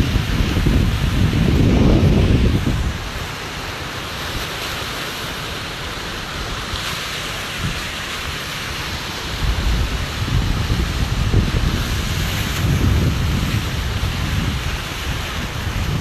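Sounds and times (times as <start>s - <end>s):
wind buffeting microphone: 0.0s - 3.4s, 8.8s - 16.0s
steady hiss: 0.0s - 16.0s.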